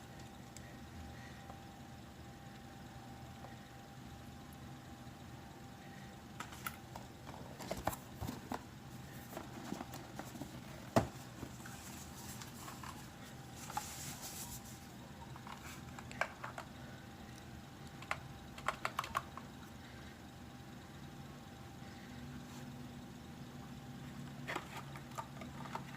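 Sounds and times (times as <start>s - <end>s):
mechanical keyboard clicks: 18.0s - 19.4s.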